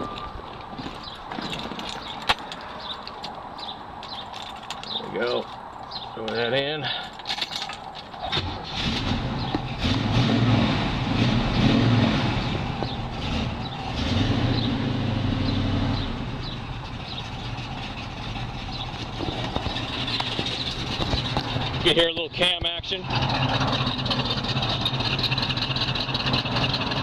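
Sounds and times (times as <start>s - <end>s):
car engine revving and idling: 8.3s - 27.0s.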